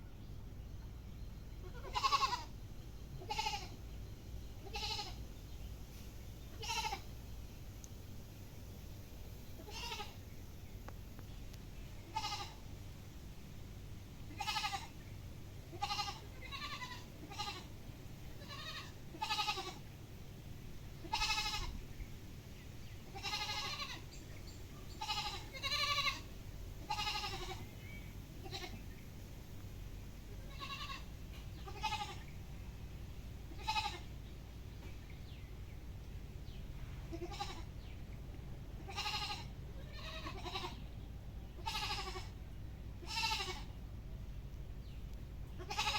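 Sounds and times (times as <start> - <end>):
goats bleating: 1.6 - 2.5, 3.2 - 3.8, 4.6 - 5.2, 6.6 - 7.0, 9.6 - 10.2, 12.1 - 12.6, 14.3 - 14.9, 15.7 - 17.7, 18.4 - 19.8, 21.0 - 21.7, 23.1 - 24.0, 25.0 - 27.7, 30.4 - 32.3, 33.6 - 34.1, 37.1 - 37.7, 38.8 - 40.8, 41.6 - 42.4, 43.0 - 43.7, 45.6 - 45.9.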